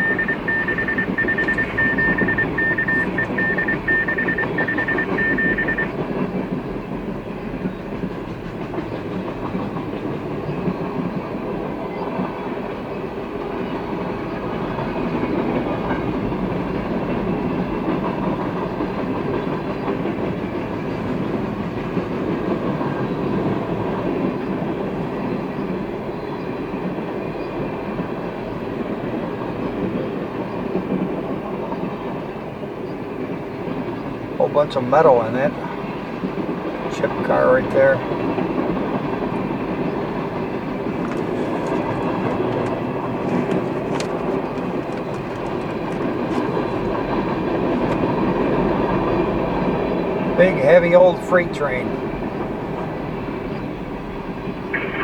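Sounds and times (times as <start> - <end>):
crossing bell ringing: 0.0 - 6.3
freight train wheels rumbling: 0.0 - 55.0.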